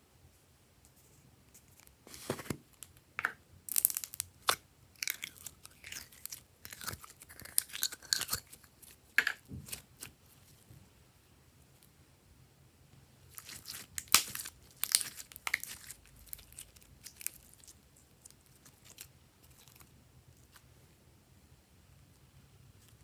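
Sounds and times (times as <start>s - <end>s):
slime squished by hand: 13.3s - 19.8s.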